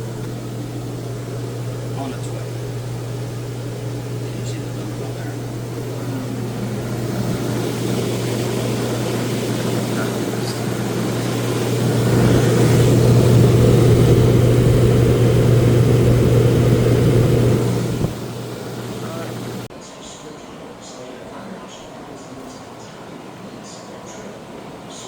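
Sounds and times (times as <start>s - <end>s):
engine droning: 0.0s - 19.7s.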